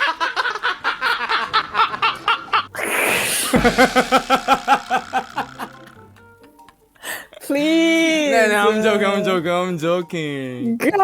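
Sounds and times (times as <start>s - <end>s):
breathy rush of air: 2.8s - 5.2s
person laughing: 2.8s - 5.9s.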